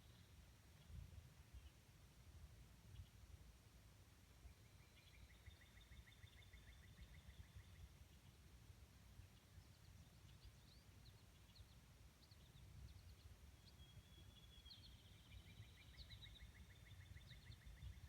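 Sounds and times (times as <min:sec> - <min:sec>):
faint bird chirps: 0:04.4 - 0:08.4, 0:09.2 - 0:18.0.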